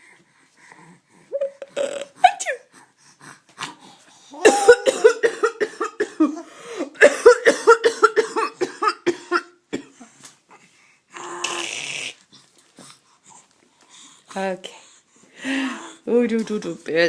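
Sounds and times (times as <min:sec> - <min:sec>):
baby laughing: 0:01.3 - 0:02.2
adult coughing: 0:04.4 - 0:10.0.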